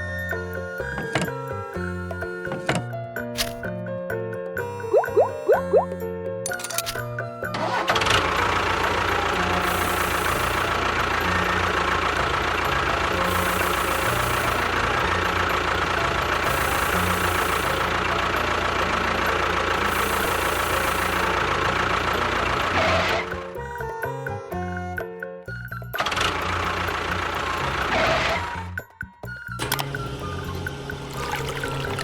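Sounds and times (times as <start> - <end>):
engine running steadily: 6.5 - 23.8, 26.0 - 28.8.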